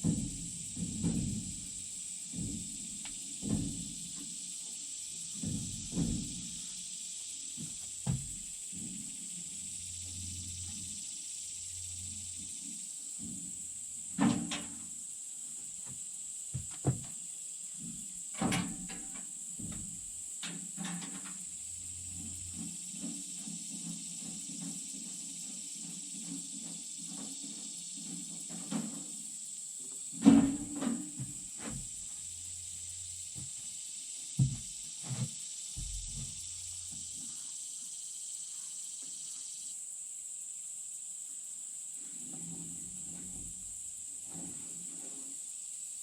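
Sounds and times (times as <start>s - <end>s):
wood and metal clunks: 0.0s - 4.4s, 5.3s - 6.8s, 7.6s - 9.1s, 13.2s - 15.0s, 15.8s - 21.4s, 30.1s - 32.1s, 34.4s - 37.1s
steady high-pitched hiss: 0.0s - 46.0s.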